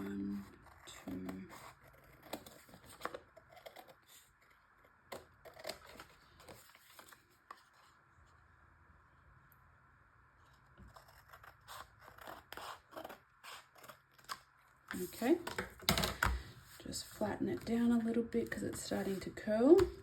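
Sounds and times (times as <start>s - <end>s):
paper rustling: 5.1s - 8.0s.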